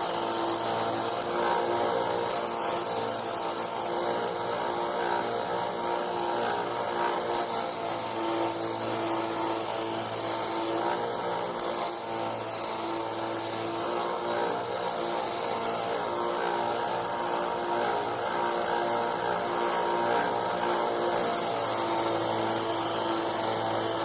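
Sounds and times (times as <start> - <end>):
harsh grinding hiss: 0.0 - 1.4, 2.2 - 3.9, 7.4 - 10.8, 21.1 - 24.0.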